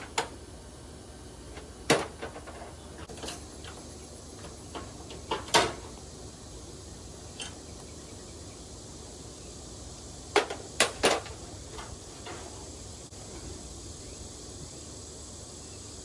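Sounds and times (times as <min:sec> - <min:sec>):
low steady hiss: 0:00.0 - 0:16.0
metal knocks and clanks: 0:01.6 - 0:06.0, 0:10.4 - 0:12.8.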